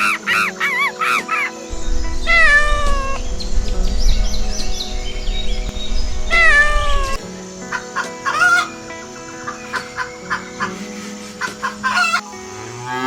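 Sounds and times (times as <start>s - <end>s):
wind rumble on microphone: 1.7s - 7.2s.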